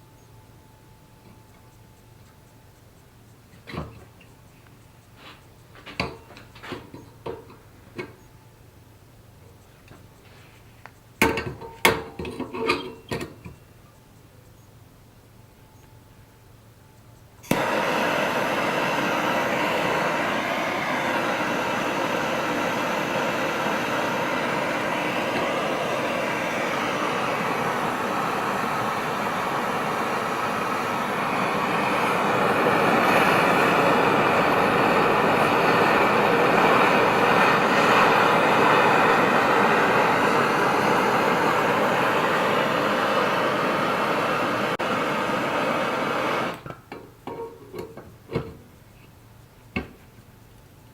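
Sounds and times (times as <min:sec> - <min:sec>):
electric power tool on steel: 0:17.4 - 0:46.6.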